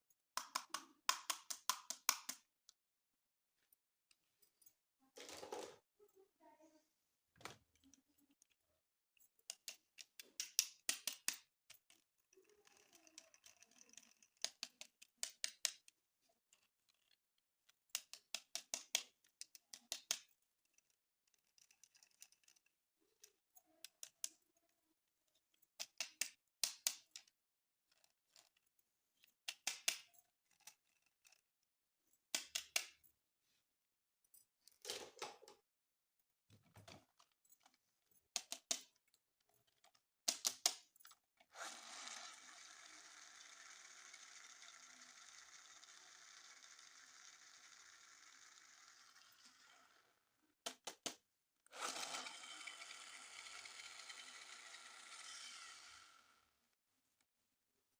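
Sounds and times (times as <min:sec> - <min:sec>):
plastic pieces clicking and rattling: 0:09.4 - 0:15.9, 0:16.5 - 0:22.7.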